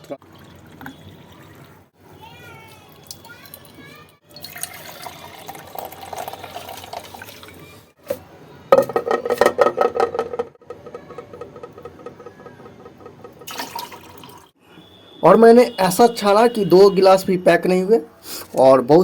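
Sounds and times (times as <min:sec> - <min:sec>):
liquid pouring and splashing: 0:00.0 - 0:01.9, 0:02.7 - 0:07.8, 0:13.4 - 0:14.5.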